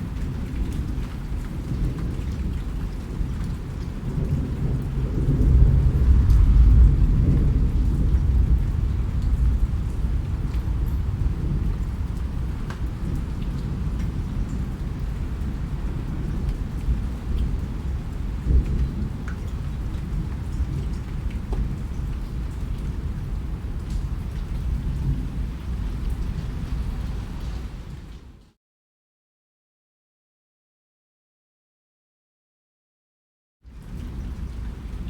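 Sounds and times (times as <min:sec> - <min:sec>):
steady rain falling: 0:00.0 - 0:28.6, 0:33.7 - 0:35.0.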